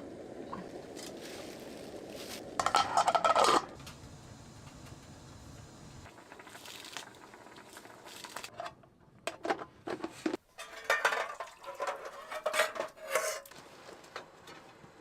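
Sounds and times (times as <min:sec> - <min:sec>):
metal cookware clattering: 0:02.6 - 0:03.8, 0:08.5 - 0:13.5.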